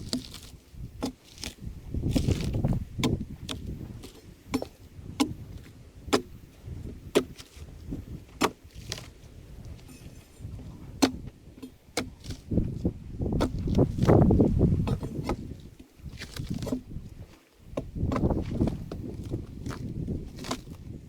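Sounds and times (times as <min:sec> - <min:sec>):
tool knocking on log: 0:03.0 - 0:05.4.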